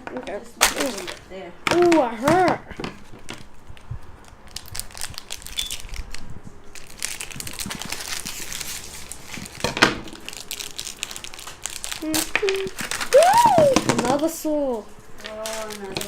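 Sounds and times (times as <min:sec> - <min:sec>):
plastic packaging crinkling: 0:03.4 - 0:14.3, 0:15.2 - 0:16.0.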